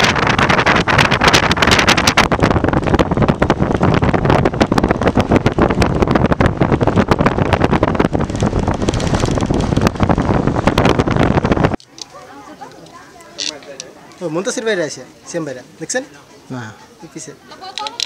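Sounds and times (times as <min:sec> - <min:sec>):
wind buffeting microphone: 0:00.0 - 0:11.8.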